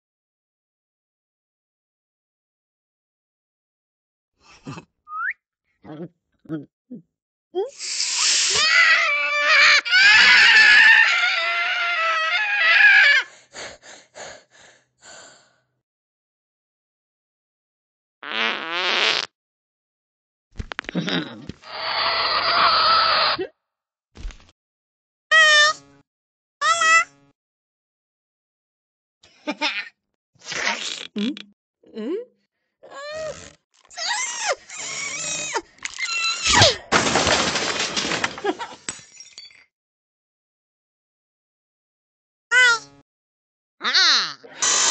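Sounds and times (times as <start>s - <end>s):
high-pitched squeaky fart: 18.2s - 19.3s, 21.6s - 23.4s, 44.6s - 44.9s.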